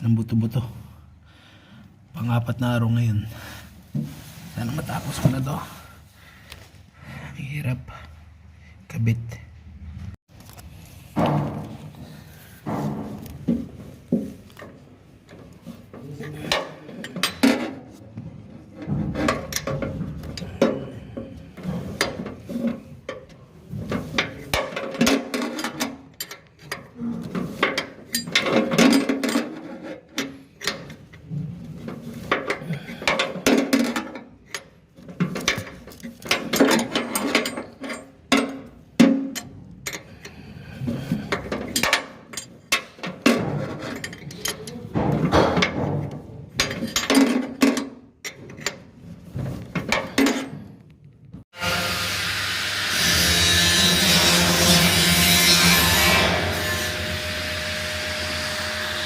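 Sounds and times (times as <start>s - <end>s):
hand tools clinking on metal: 27.6s - 31.0s, 32.3s - 40.4s, 41.3s - 45.0s.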